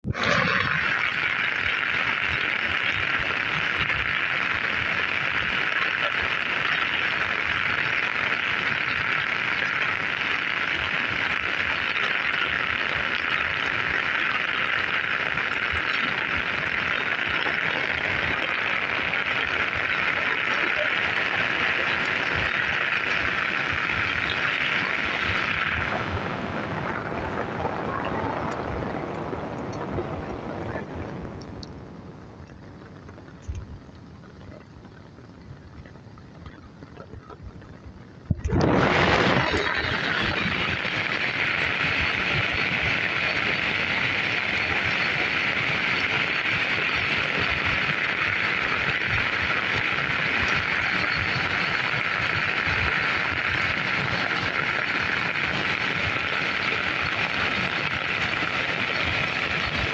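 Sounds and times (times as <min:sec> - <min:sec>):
steady rainfall: 0:00.0 - 0:59.9
water drips: 0:00.5 - 0:38.7.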